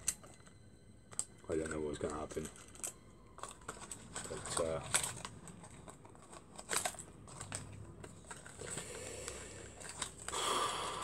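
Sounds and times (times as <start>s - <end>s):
sharp clicks of small metal parts: 1.1s - 8.8s.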